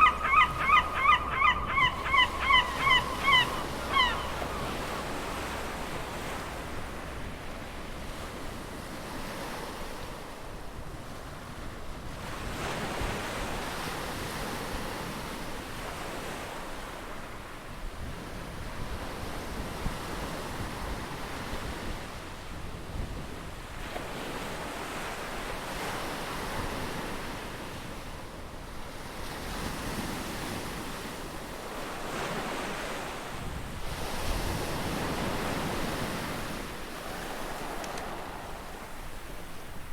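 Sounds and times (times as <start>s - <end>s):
ocean waves breaking: 0.0s - 11.7s, 23.9s - 39.9s.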